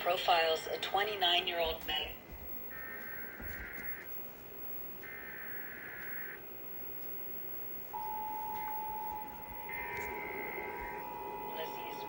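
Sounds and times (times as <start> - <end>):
two-tone attention signal: 8.0 - 12.0.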